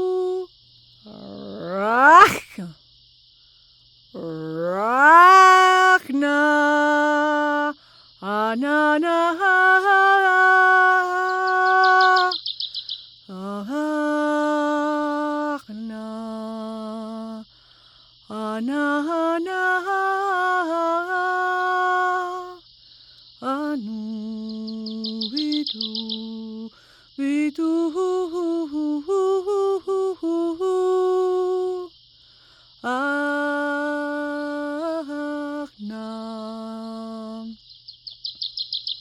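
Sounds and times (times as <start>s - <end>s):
breaths: 3.4s - 3.9s, 7.8s - 8.2s, 12.6s - 13.2s, 17.4s - 18.3s, 22.7s - 23.4s, 26.7s - 27.2s, 32.1s - 32.8s.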